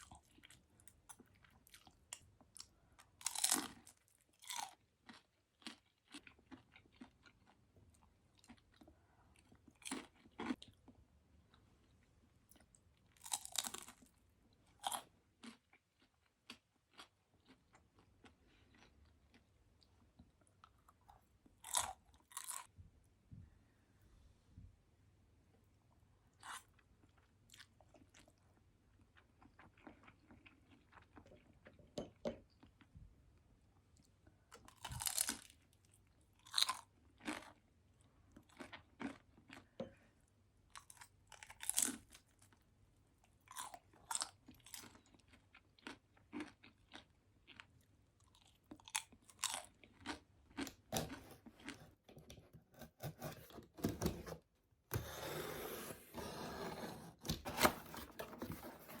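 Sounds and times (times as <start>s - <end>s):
person chewing crunchy food: 0.0s - 12.0s, 12.6s - 22.7s, 34.6s - 35.6s, 36.4s - 37.7s, 38.3s - 40.1s, 40.7s - 42.4s, 43.4s - 54.1s.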